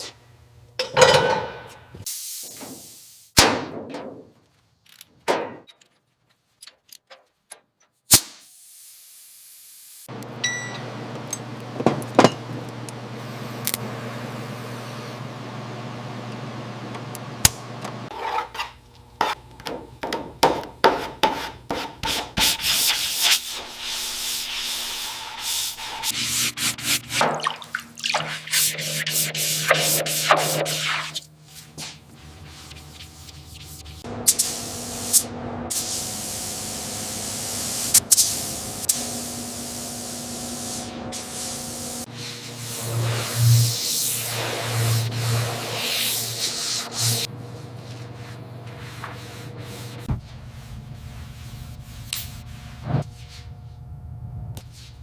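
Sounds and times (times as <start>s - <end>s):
sanding and scraping strokes: 18.1s - 19.4s, 20.8s - 27.2s, 28.1s - 34.1s, 40.6s - 53.5s.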